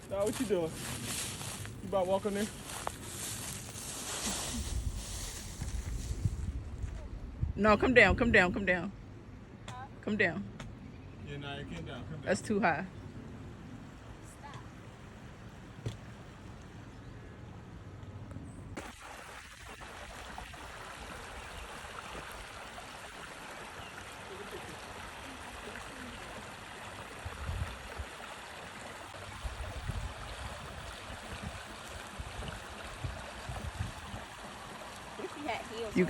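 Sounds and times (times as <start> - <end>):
stream water running: 0.0 - 6.4, 18.8 - 36.0.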